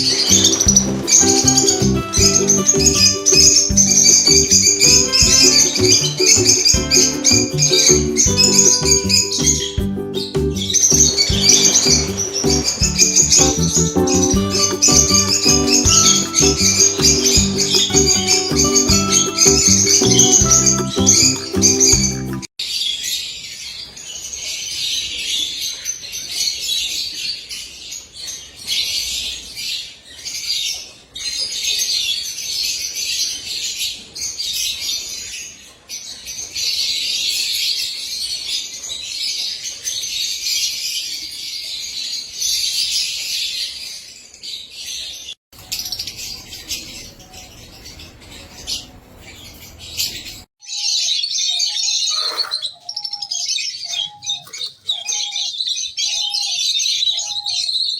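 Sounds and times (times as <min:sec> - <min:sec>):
lovebirds chattering and chirping: 0:00.0 - 0:22.4, 0:45.6 - 0:57.9
lower repeated bird calls: 0:00.0 - 0:22.4, 0:45.6 - 0:57.9.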